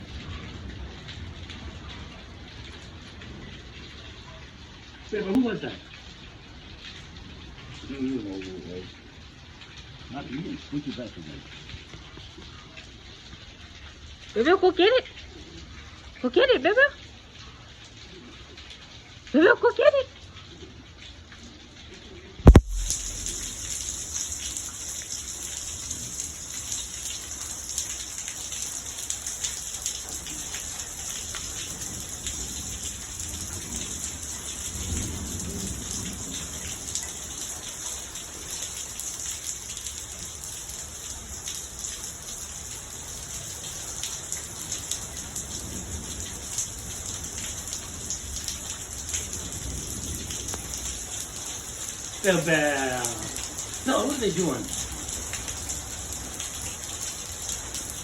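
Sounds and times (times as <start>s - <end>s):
heavy rain falling: 0.0s - 58.0s
loud thump: 22.5s - 23.6s.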